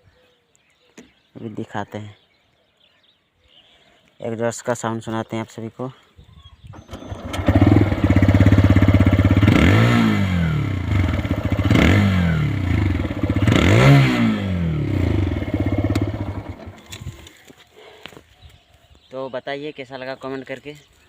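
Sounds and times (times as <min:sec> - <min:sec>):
motorcycle engine revving and idling: 0:06.7 - 0:17.3.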